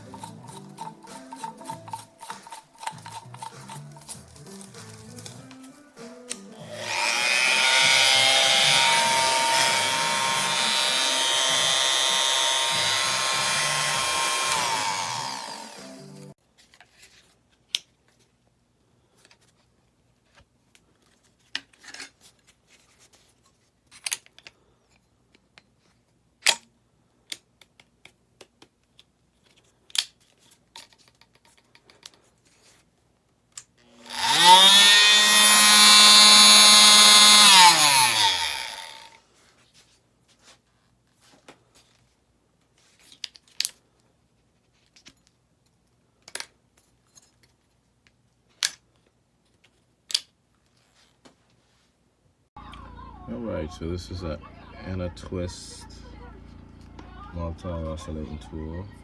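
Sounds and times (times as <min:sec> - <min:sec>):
tool handling clicks and knocks: 0:00.1 - 0:04.4, 0:27.3 - 0:32.3
oscillating multitool motor: 0:06.6 - 0:16.3, 0:33.9 - 0:39.2.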